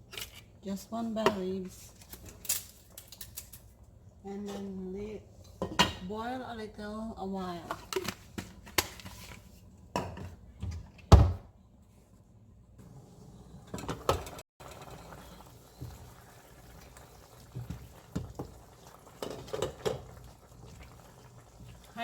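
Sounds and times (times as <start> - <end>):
pots and utensils knocking: 19.2 - 20.1.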